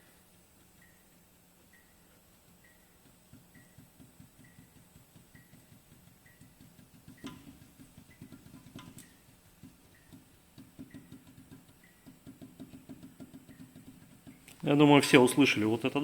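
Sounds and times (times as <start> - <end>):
light knocking of shock absorber: 2.3 - 14.6.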